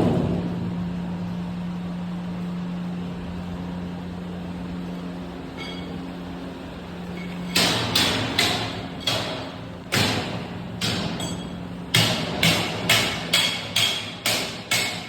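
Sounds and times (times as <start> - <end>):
machine hum: 0.0 - 13.3.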